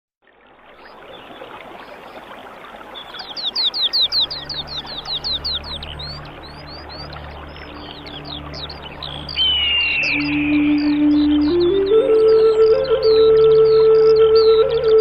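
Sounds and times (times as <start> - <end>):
songbird whistling: 3.1 - 15.0
low musical drone: 4.2 - 15.0.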